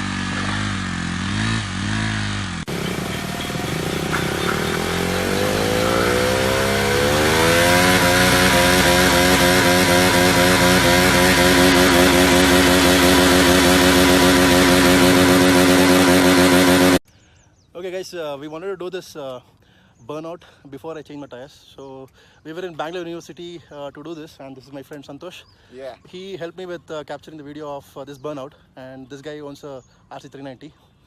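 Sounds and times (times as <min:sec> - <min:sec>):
motorcycle engine revving: 0:00.0 - 0:17.0.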